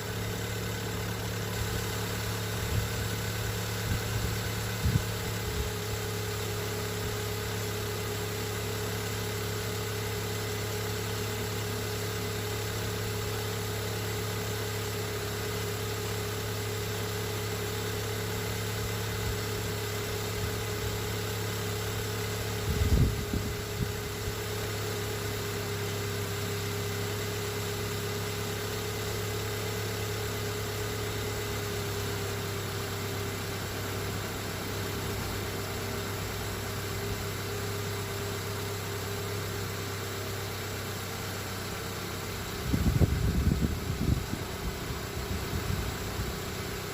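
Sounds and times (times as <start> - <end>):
car engine idling: 0.0 - 46.9.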